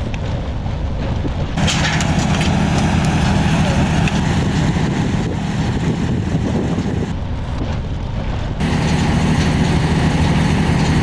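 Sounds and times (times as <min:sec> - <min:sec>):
heavy machine engine humming: 0:01.6 - 0:07.1, 0:08.6 - 0:11.0.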